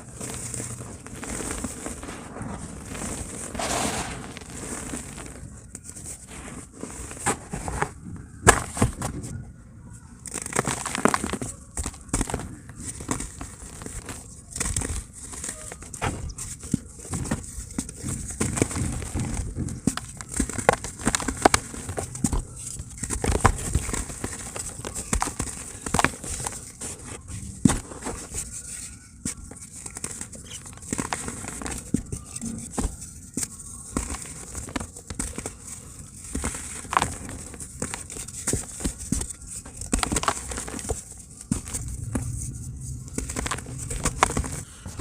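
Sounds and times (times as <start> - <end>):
dry cement crunching and crackling: 0.0 - 45.0.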